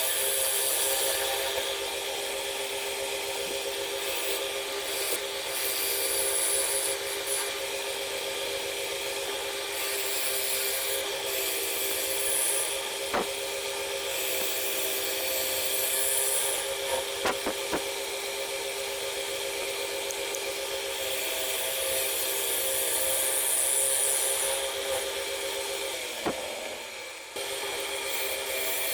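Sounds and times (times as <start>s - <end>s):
wood lathe motor hum: 0.0s - 28.9s
sharp knocks: 13.1s - 13.4s, 17.2s - 17.9s.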